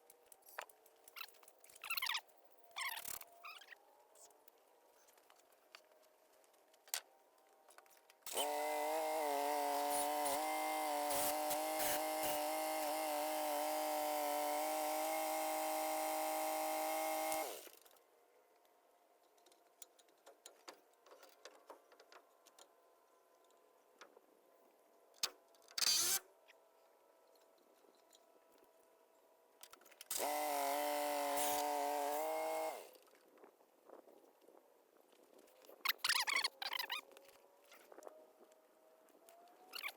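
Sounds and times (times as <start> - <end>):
power tool motor running: 8.3 - 17.7, 30.1 - 32.9.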